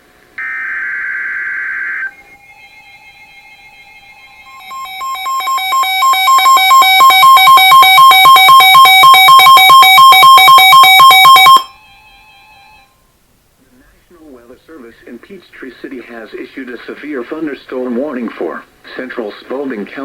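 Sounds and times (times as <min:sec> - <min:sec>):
two-note rapid alarm beeping: 0:04.5 - 0:11.7.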